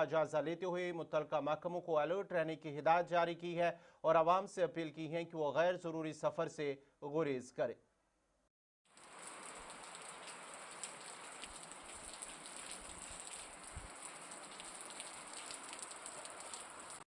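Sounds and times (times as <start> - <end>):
raindrops ticking on hard surfaces: 8.9 - 17.0
heavy rain: 9.0 - 17.0.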